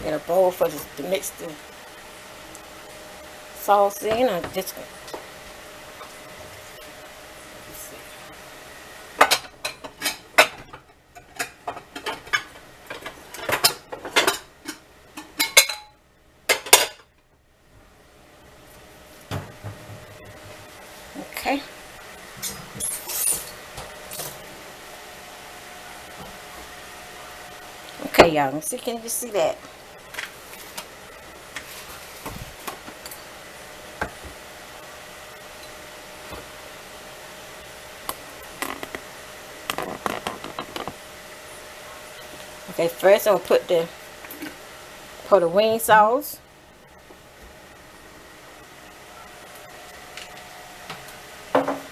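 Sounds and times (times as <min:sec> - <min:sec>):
faint room hum: 0:00.0 - 0:51.9
dishes and utensils clattering: 0:09.2 - 0:17.1, 0:22.4 - 0:24.4.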